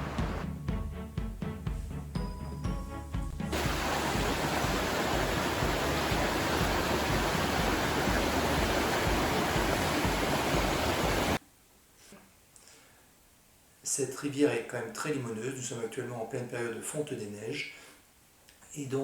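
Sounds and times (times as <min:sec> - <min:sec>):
turbulent river rushing: 0:03.5 - 0:11.4.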